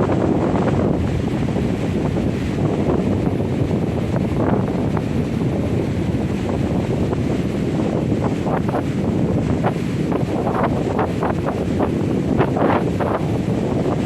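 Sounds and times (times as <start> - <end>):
surf washing onto beach: 0.0 - 14.0
wind buffeting microphone: 0.0 - 14.0.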